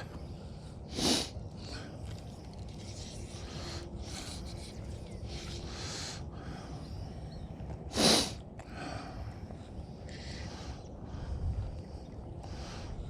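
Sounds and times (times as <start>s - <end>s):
low outdoor background: 0.0s - 13.0s
person sniffing: 0.9s - 1.4s, 7.9s - 8.4s.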